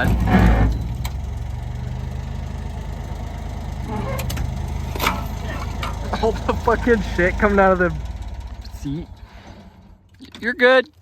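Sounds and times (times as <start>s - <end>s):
engine idling: 0.0s - 11.0s
sharp metal knocks: 4.2s - 6.0s.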